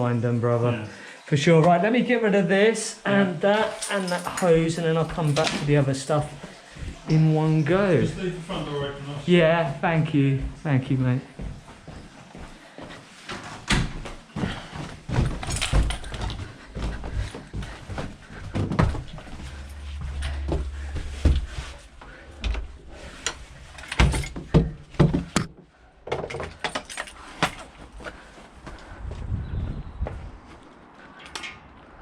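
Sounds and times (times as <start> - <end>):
low rumble: 16.0 - 24.9.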